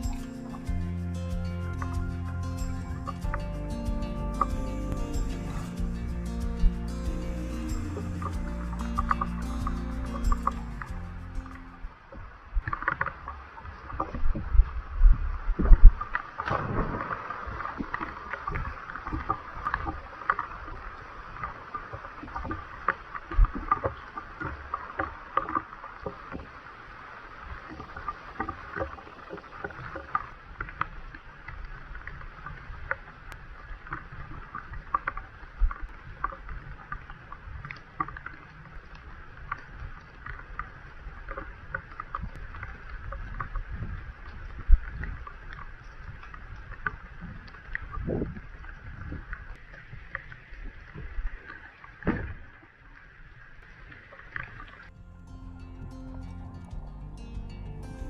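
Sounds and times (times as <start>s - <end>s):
wind rumbling on microphone: 13.7s - 24.5s, 38.7s - 51.4s.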